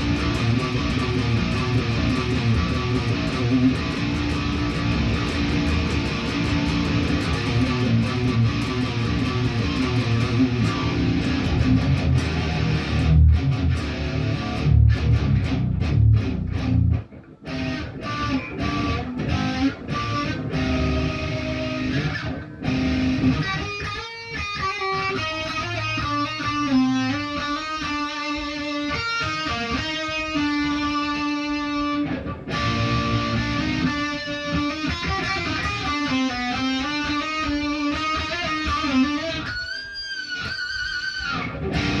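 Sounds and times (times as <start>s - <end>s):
guitar single notes picked: 0.0s - 42.0s
heavy guitar chords: 0.0s - 42.0s.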